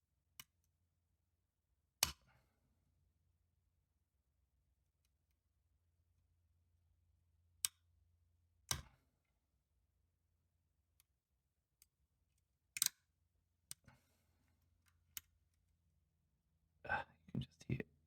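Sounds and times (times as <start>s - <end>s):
metal clicks of lock being picked: 12.8s - 13.0s.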